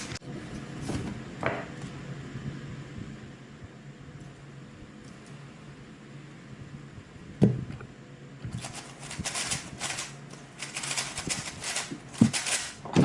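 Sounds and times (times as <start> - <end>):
speedcube clicking clatter: 8.6 - 12.8.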